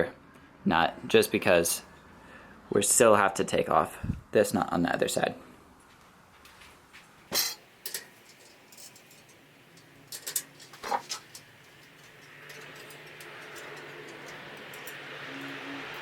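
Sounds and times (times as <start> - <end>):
steady hiss with low hum: 0.0 - 16.0
wrench clinking on metal: 7.4 - 15.6.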